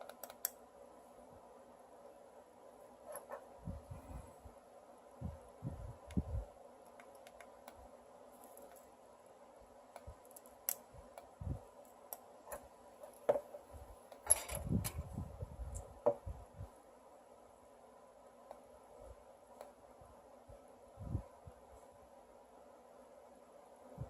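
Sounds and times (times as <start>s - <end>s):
faint steady hum: 0.0s - 24.0s
small metal parts clicking: 14.1s - 15.0s.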